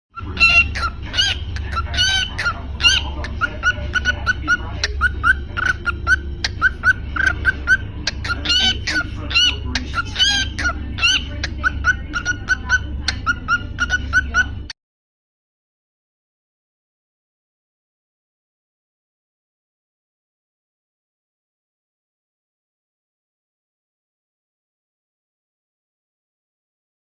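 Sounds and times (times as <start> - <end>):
cockatiel chirping: 0.2 - 14.7.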